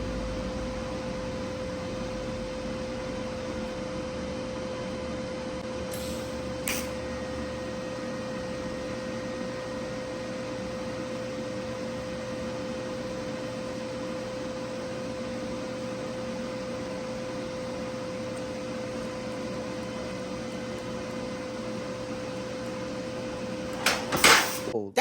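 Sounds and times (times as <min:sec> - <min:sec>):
welding hiss with hum: 0:05.8 - 0:24.8.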